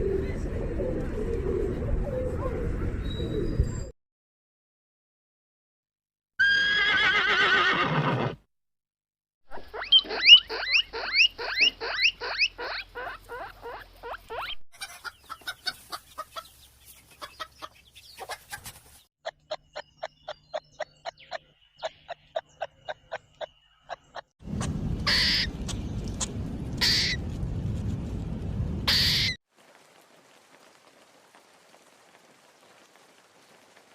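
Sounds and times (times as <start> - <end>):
steady rushing noise: 24.4 - 29.0.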